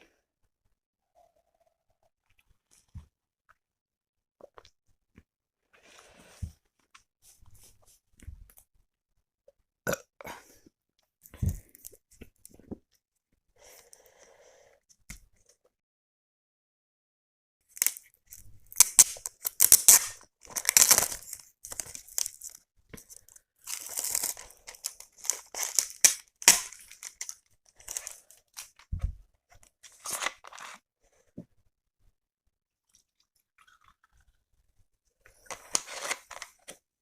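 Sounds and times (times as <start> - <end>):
chewing and wet mouth noises: 33.0 - 34.4.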